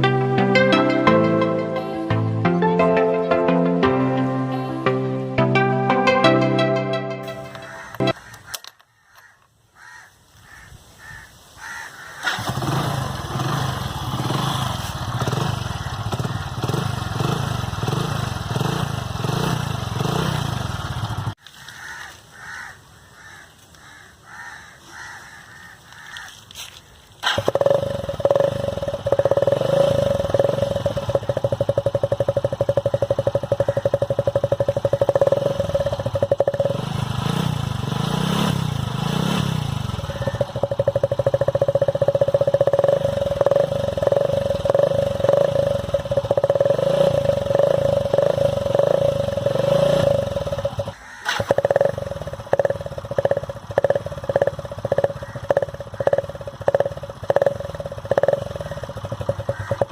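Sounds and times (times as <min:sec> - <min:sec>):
motorcycle engine running: 0:07.2 - 0:08.4, 0:12.2 - 0:22.7, 0:27.1 - 0:59.9.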